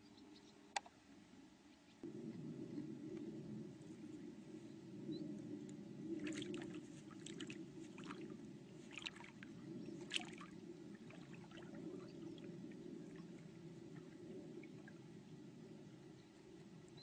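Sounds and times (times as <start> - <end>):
steady low hum: 0.0 - 17.0
water splashes and trickling: 6.2 - 15.0.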